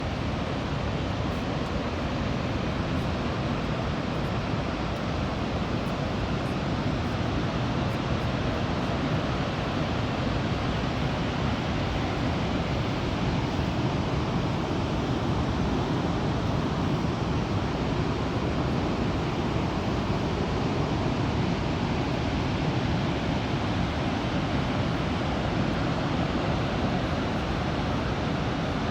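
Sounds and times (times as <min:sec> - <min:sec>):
large waterfall roaring: 0:00.0 - 0:28.9.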